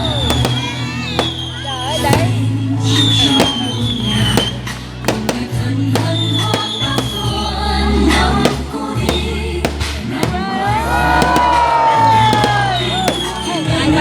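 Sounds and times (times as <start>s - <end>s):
firework whistle falling: 0.0s - 7.5s, 11.2s - 13.7s
fireworks banging: 0.0s - 14.0s.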